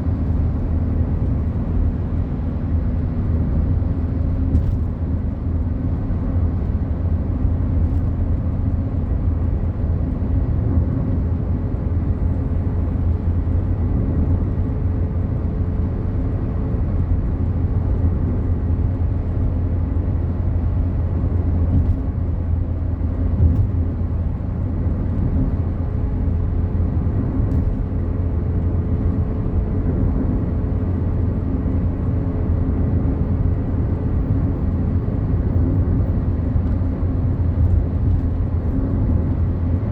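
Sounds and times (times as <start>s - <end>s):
car engine and tyre road noise: 0.0s - 39.9s.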